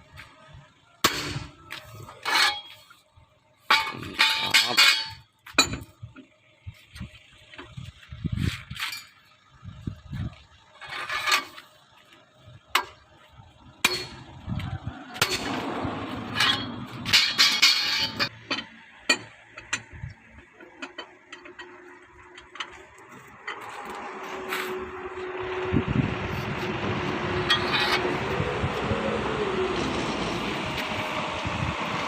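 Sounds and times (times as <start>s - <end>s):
steel tools striking wheel nuts: 1.0s - 2.9s, 3.6s - 6.1s, 12.8s - 13.0s, 13.8s - 14.6s, 15.2s - 24.8s.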